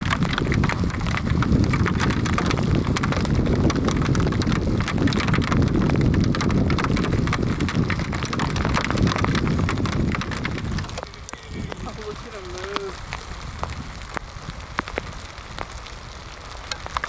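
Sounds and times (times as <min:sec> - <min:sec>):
horses galloping hoofbeats: 0:00.0 - 0:15.7
wind on microphone: 0:00.0 - 0:17.0.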